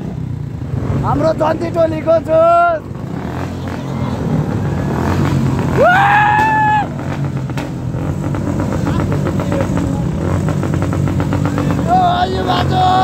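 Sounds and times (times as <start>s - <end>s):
motorcycle engines rumbling: 0.0s - 13.0s
exhaust backfire pop: 5.2s - 9.8s.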